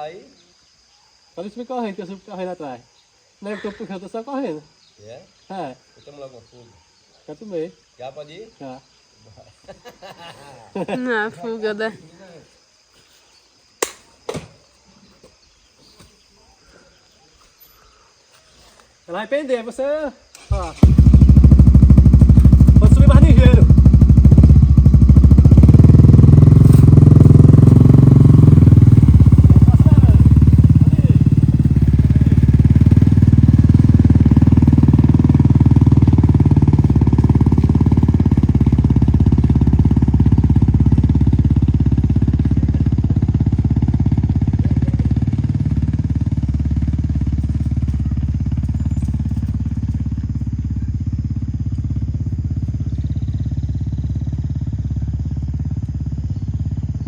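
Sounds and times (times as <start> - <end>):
motorcycle engine pulling uphill: 20.4 - 57.0.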